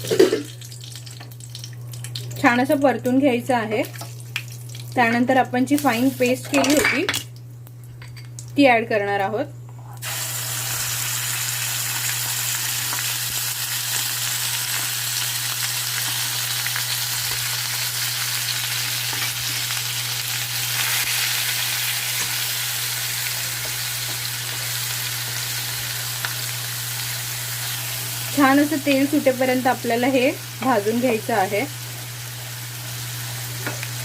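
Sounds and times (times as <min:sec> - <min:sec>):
paste sizzling in hot oil: 0:10.0 - 0:34.0.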